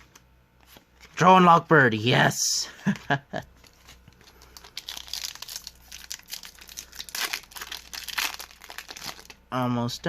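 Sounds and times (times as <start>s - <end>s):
foil wrapper crinkling: 3.6s - 9.4s.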